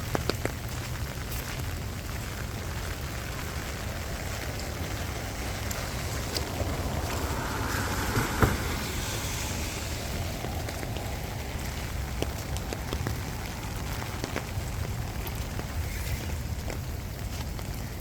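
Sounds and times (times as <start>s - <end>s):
rain falling: 0.0s - 18.0s
low rumble: 2.0s - 15.7s.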